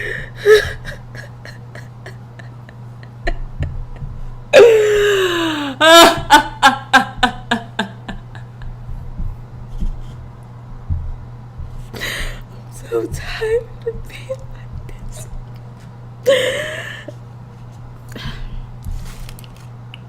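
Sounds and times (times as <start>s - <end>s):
air conditioner hum: 0.0s - 20.0s
short sobbing cries: 4.6s - 6.6s.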